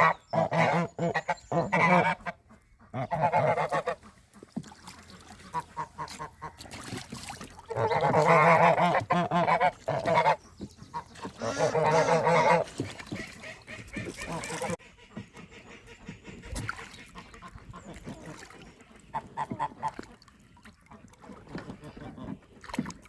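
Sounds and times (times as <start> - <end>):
geese honking: 0.0 - 6.6, 7.7 - 18.4.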